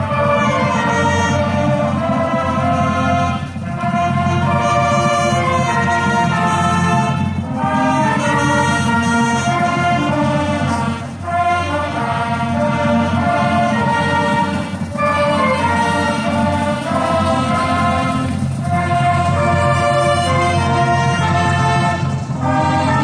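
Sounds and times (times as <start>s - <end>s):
brass music: 0.0s - 23.0s.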